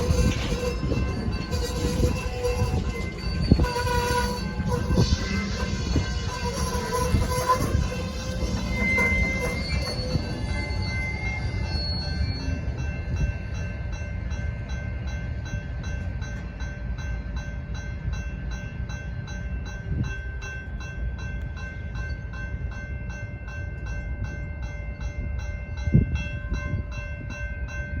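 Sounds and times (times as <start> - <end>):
wheels squealing: 0.0 - 13.3
freight train rumbling past: 0.0 - 28.0.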